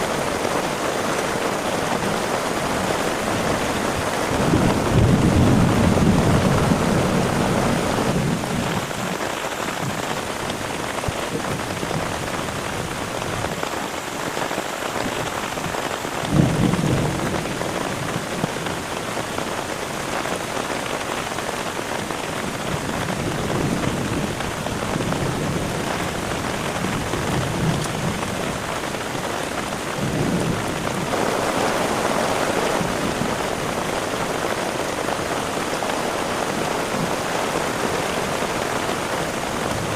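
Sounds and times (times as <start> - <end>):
heavy rain falling: 0.0 - 39.9
thunder rolling: 3.4 - 8.9
sharp thunderclap: 4.3 - 8.6, 16.3 - 18.4.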